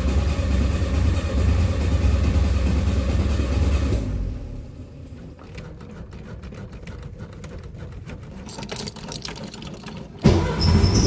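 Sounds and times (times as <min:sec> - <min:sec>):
car engine cranking on starter: 0:00.0 - 0:11.0.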